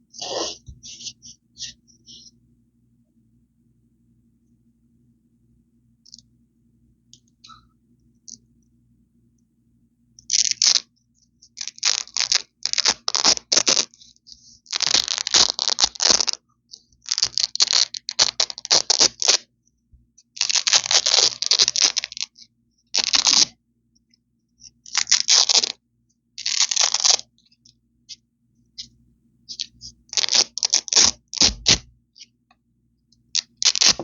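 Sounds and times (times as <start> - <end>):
velcro ripping apart: 10.3 - 10.9, 11.6 - 14.0, 14.7 - 16.4, 17.1 - 19.4, 20.4 - 22.3, 23.0 - 23.5, 24.9 - 25.8, 26.4 - 27.2, 29.6 - 31.9, 33.4 - 34.0.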